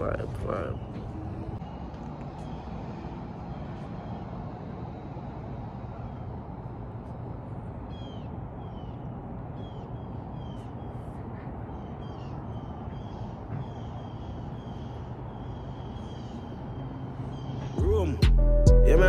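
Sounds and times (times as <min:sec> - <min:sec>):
bird chirping: 0:07.8 - 0:18.2.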